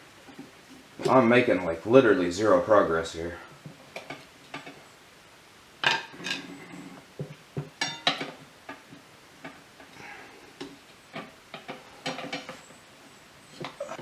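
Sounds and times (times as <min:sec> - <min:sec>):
tire irons clanking on wheel rim: 0:07.7 - 0:12.8.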